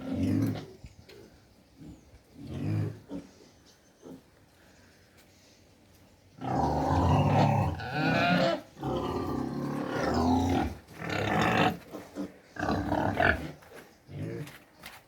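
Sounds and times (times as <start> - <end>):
pigs calling loudly: 6.4 - 14.5.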